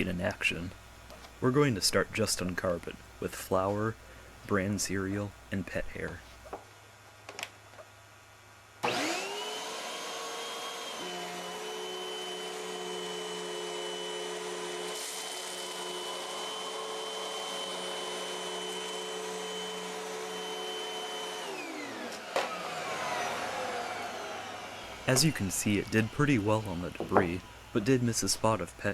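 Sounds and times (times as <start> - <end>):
vacuum cleaner motor whine: 8.8 - 28.8.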